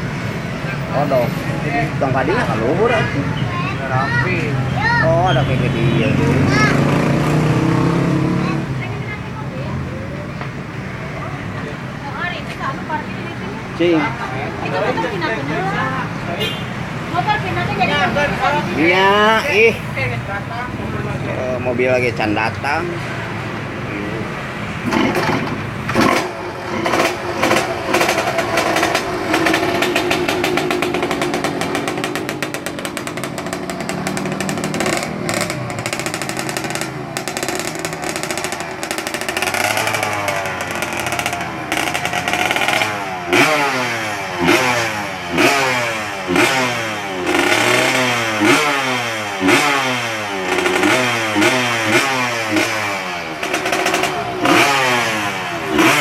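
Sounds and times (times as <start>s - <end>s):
two-stroke motorcycle engine revving: 0.0s - 10.8s, 23.3s - 56.0s.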